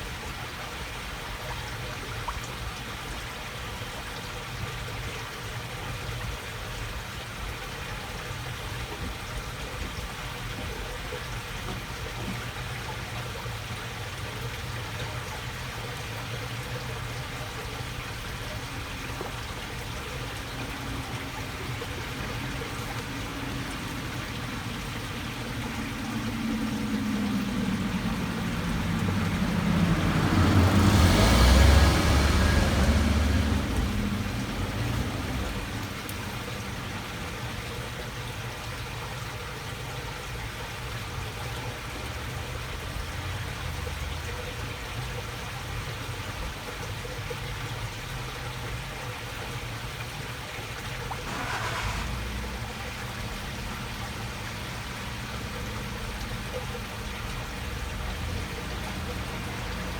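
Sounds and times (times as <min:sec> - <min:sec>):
water trickling: 0:00.0 - 0:59.9
car driving past: 0:16.7 - 0:38.2, 0:51.0 - 0:59.9.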